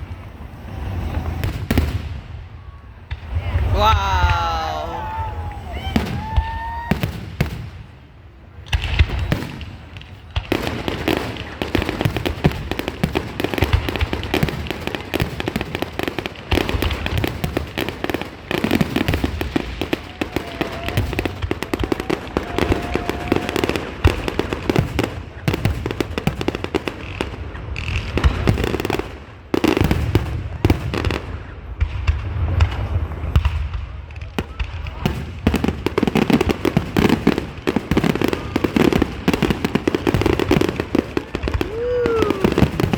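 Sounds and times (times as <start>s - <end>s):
fireworks booms: 0.0s - 42.9s
fireworks crackling and popping: 0.0s - 42.9s.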